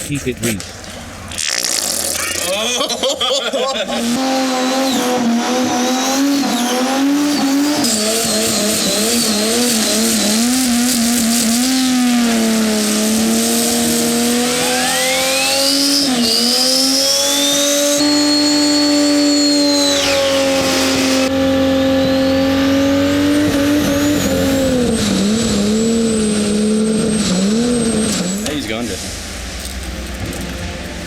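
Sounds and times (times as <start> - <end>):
tyres squealing: 0.0 - 21.3
car engine revving high: 3.8 - 29.6
high whistle rising: 4.2 - 28.5.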